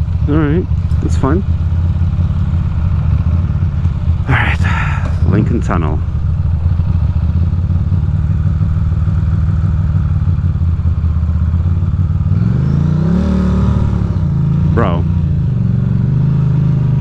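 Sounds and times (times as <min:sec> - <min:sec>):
motorcycle engine idling: 0:00.0 - 0:12.4
motorcycle engine revving: 0:00.0 - 0:17.0.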